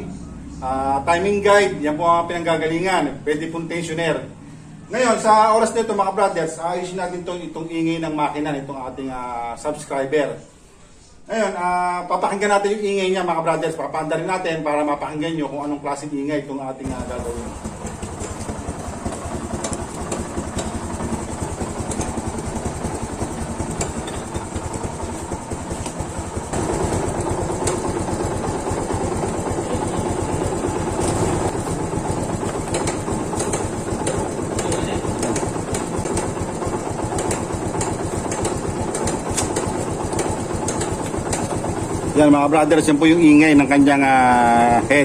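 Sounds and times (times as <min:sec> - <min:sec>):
motorcycle engine running: 0:16.8 - 0:45.0
engine top-end ticking noise: 0:17.0 - 0:26.2.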